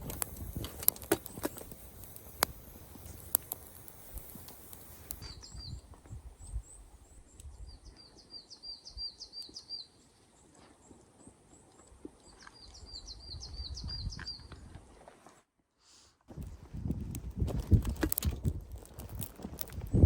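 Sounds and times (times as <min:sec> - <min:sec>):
twig fire crackling and popping: 0:00.0 - 0:07.5, 0:16.3 - 0:20.0
small bird chirping: 0:00.0 - 0:10.5, 0:12.2 - 0:14.6.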